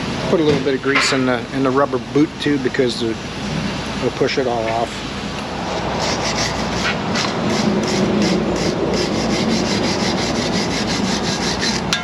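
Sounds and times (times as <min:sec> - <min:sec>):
hand tool scraping metal: 0:05.7 - 0:12.0.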